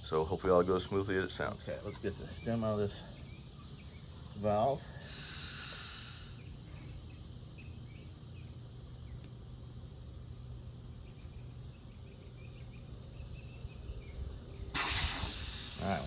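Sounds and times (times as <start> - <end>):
insects chirping: 0.0 - 16.0
air hissing from tire valve: 4.8 - 6.5, 10.3 - 16.0.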